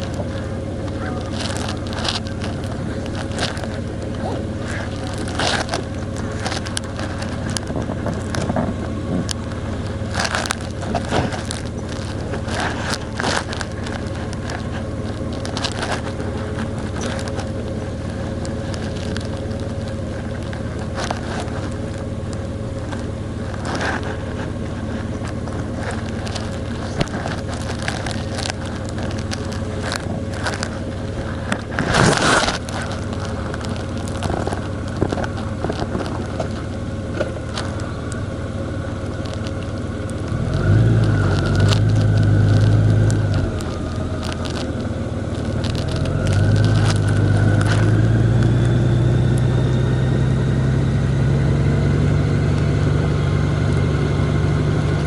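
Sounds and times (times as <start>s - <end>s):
crackles and rustling knocks: 0.0s - 55.0s
vehicle engine and road hum: 0.0s - 55.0s.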